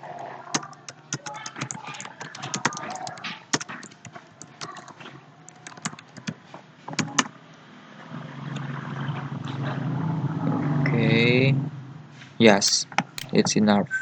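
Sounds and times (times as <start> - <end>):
computer keyboard typing: 0.5 - 7.3.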